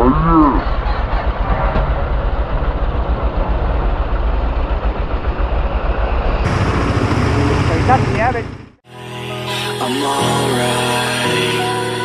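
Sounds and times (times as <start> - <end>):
motorcycle engine running: 1.1 - 8.8.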